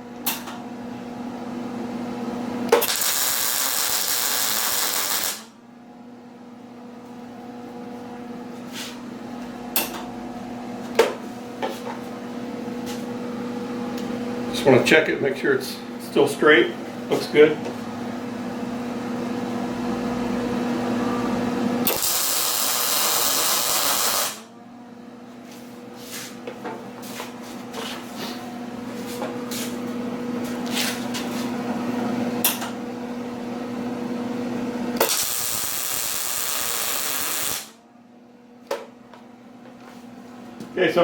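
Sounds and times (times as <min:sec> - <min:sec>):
welding arc hiss and crackle: 0:02.7 - 0:05.5, 0:21.8 - 0:24.5, 0:35.0 - 0:37.8
welder hum: 0:02.7 - 0:05.6, 0:21.3 - 0:24.5, 0:35.0 - 0:37.8.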